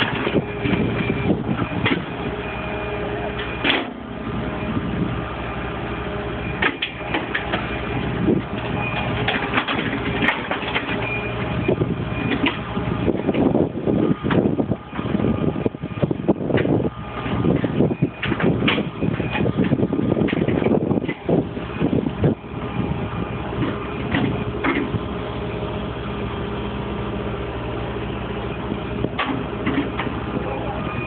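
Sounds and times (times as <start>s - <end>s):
excavator engine droning: 0.0s - 31.0s
metal clanks and knocks: 8.5s - 11.0s, 16.5s - 21.3s, 23.6s - 25.0s.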